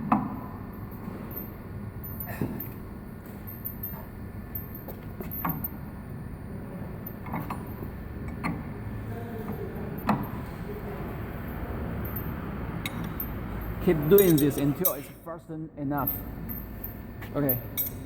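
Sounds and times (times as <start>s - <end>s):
low steady hum: 0.0s - 18.0s
wrenches clinking on metal: 12.0s - 15.3s, 16.0s - 18.0s.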